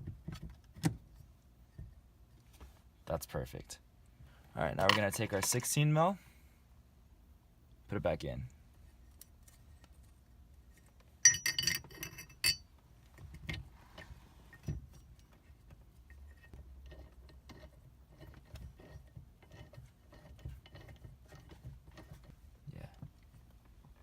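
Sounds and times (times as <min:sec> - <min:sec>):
metal nut and socket clinking: 0:04.8 - 0:05.8, 0:10.8 - 0:12.7.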